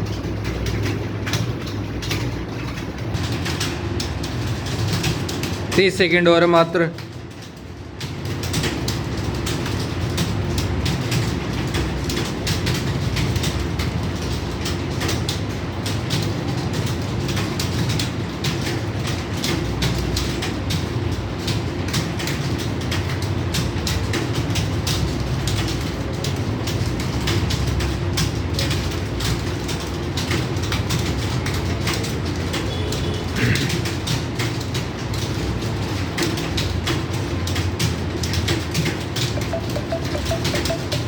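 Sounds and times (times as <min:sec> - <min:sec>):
keyboards clattering: 0:38.4 - 0:41.0.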